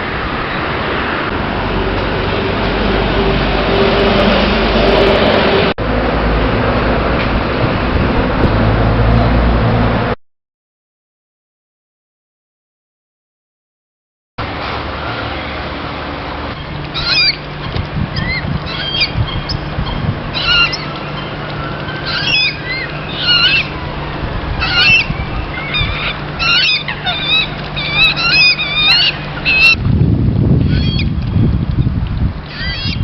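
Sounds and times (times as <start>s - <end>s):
steady background hum: 14.4s - 33.0s
birds calling: 15.0s - 29.8s, 30.6s - 33.0s.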